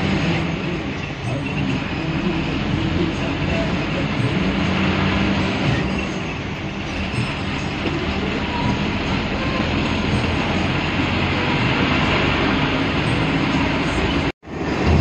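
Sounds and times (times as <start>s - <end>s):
bus engine and road rumble: 0.0s - 15.0s.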